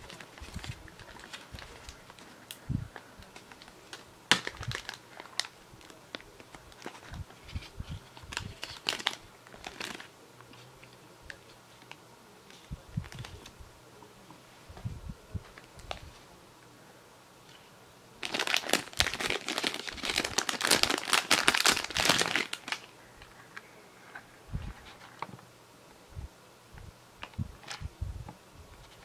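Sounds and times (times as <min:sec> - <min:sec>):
plastic packaging crinkling: 0:00.0 - 0:02.6, 0:03.2 - 0:10.1, 0:18.2 - 0:23.3.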